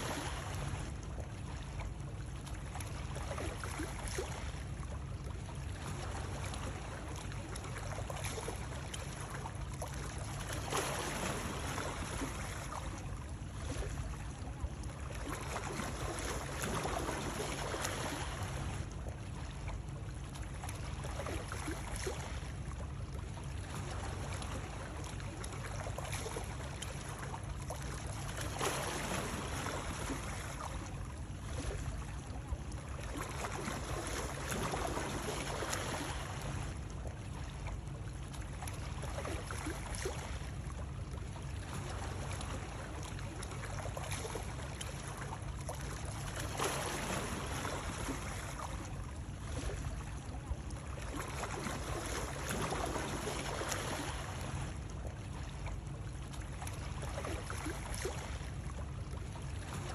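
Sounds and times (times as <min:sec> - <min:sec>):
steady low rumble: 0:00.0 - 0:43.7
water splashing and lapping: 0:00.0 - 0:59.9.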